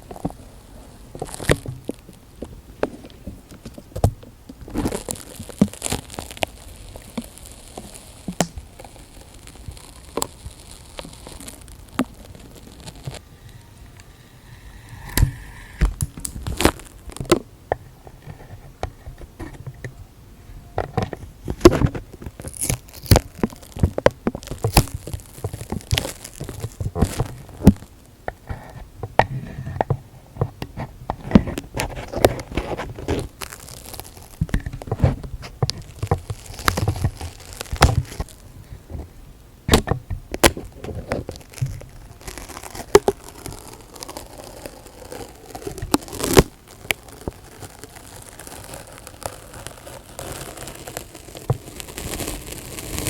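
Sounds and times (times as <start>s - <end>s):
materials rubbed at microphone: 4.7s - 17.0s.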